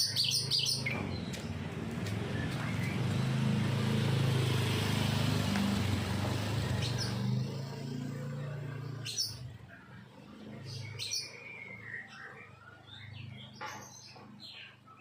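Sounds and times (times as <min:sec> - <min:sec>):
bird calls: 0:00.0 - 0:01.6
vehicle engine humming: 0:00.0 - 0:12.6.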